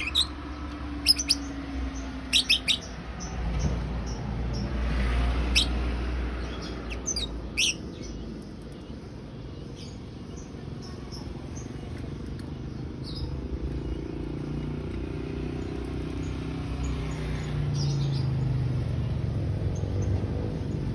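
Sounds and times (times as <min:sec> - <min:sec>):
lovebird chirping: 0:00.0 - 0:03.4, 0:04.5 - 0:08.2.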